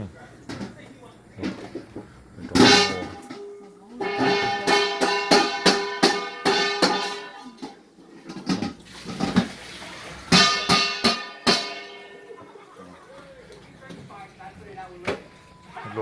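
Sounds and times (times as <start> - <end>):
sharp ringing plucked notes: 2.6 - 7.6, 10.3 - 12.4.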